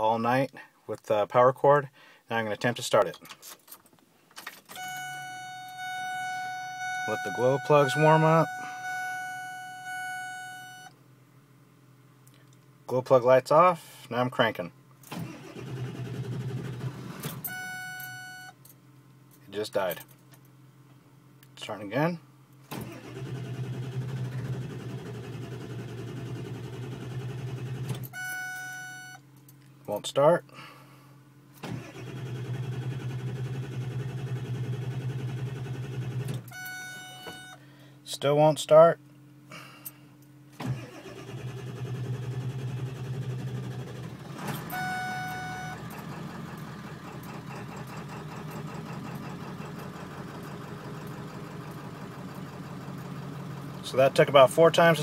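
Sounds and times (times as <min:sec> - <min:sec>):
electronic beep: 0:04.8 - 0:10.9, 0:44.7 - 0:45.8
short steady tone: 0:04.8 - 0:10.9
diesel engine starter cranking: 0:07.0 - 0:09.4, 0:15.0 - 0:18.2, 0:22.7 - 0:28.2, 0:31.6 - 0:37.6, 0:40.6 - 0:54.0.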